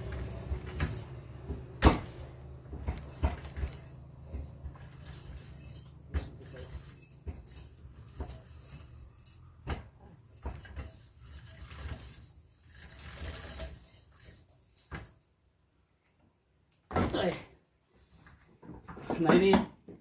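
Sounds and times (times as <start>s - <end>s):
metallic clinks and rattles: 0.0s - 15.4s.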